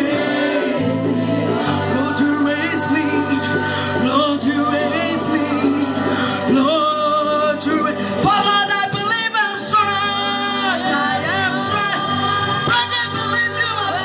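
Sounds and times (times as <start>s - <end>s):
church choir singing: 0.0s - 14.0s
instrumental backing music: 0.0s - 14.0s.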